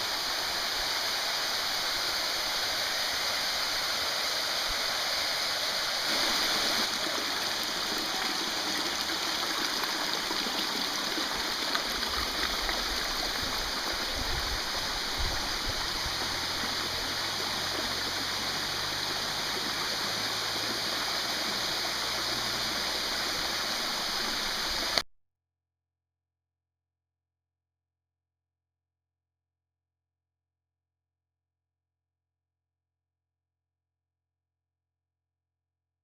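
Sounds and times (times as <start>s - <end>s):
stream water rushing: 0.0s - 25.0s.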